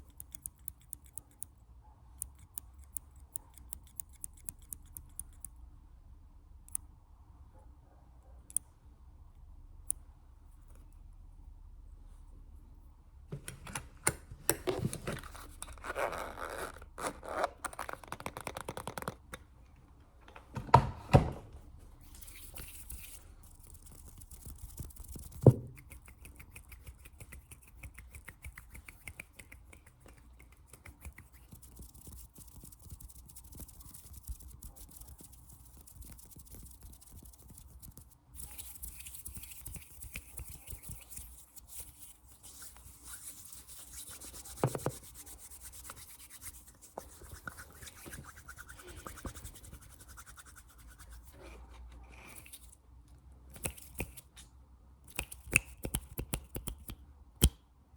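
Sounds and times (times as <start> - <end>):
soft rubbing and scratching: 21.8 - 52.8
finger taps and clicks: 55.1 - 57.6.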